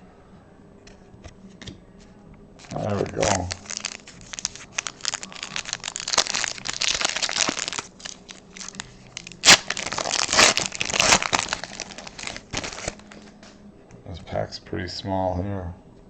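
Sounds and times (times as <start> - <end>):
plastic wrapper crinkling and tearing: 2.6 - 13.3.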